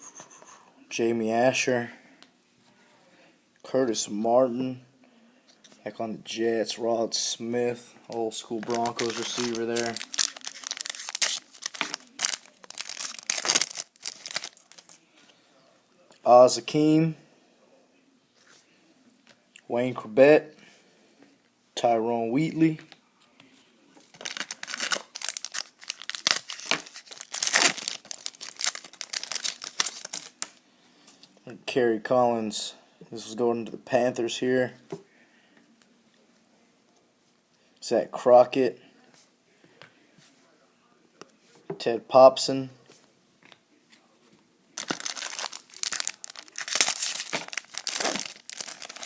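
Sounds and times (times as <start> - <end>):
plastic wrapper crinkling and tearing: 8.5 - 15.0, 24.1 - 30.6, 44.8 - 49.0.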